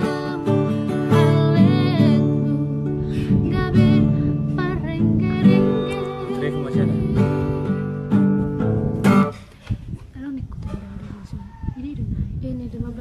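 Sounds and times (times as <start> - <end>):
woman singing with vibrato: 0.0 - 7.9
strummed acoustic guitar: 0.0 - 9.6.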